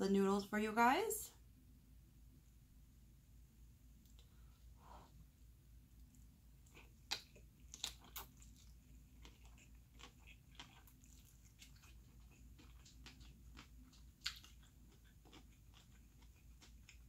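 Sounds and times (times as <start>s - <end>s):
eating noodles: 6.1s - 17.0s.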